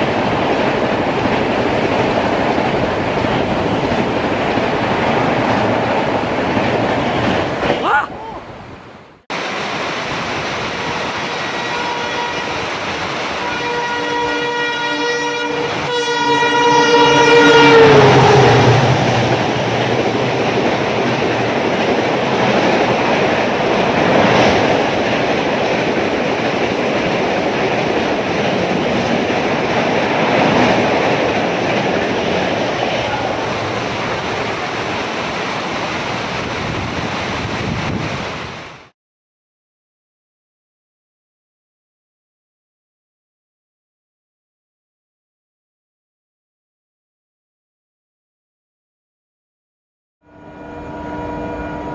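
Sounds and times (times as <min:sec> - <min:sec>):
train wheels and wind roaring: 0:00.0 - 0:38.9
locomotive horn: 0:11.2 - 0:18.8, 0:50.2 - 0:51.9.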